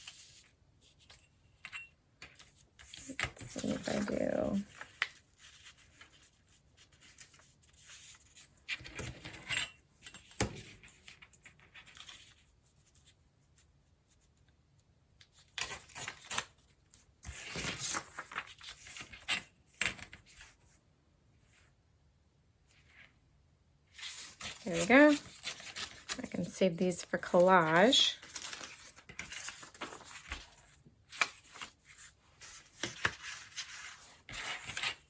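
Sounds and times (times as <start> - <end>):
paper tearing and rustling: 17.3 - 19.4, 24.0 - 26.3, 27.3 - 35.0.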